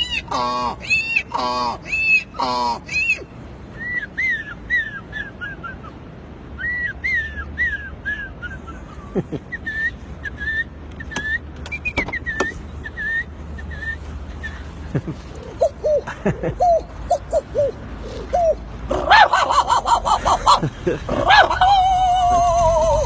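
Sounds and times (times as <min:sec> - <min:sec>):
man whistling birdsong: 0:03.8 - 0:05.8, 0:06.6 - 0:08.9, 0:09.6 - 0:14.6.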